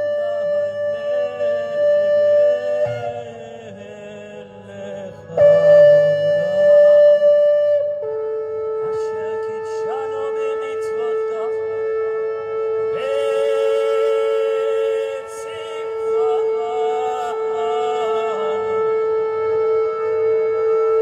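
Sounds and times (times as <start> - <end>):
steady held tone: 0.0 - 21.0
shofar blasts: 5.2 - 21.0.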